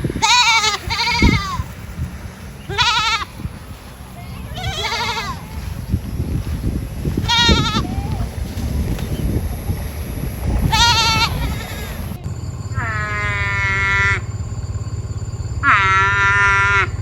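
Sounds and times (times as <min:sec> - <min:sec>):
low rumbling background noise: 0:00.0 - 0:17.0
goats bleating: 0:00.2 - 0:01.7, 0:02.7 - 0:03.5, 0:04.3 - 0:05.7, 0:07.1 - 0:08.3, 0:10.6 - 0:12.2.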